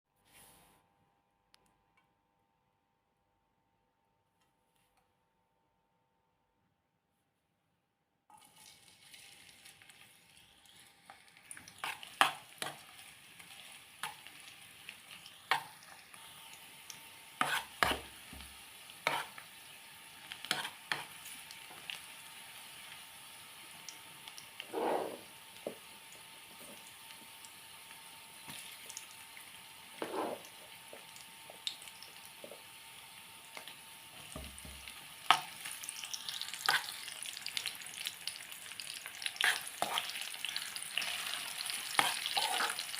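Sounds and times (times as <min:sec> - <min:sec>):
food sizzling in hot oil: 0:08.3 - 0:42.9
utensil scraping a pan: 0:17.4 - 0:18.1, 0:19.0 - 0:19.4, 0:24.7 - 0:25.3, 0:30.0 - 0:30.5, 0:41.7 - 0:42.9.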